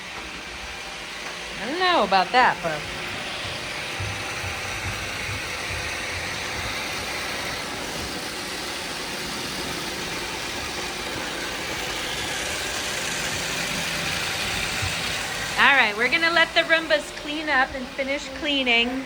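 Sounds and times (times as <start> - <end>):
robot vacuum cleaners humming: 0.0 - 19.0.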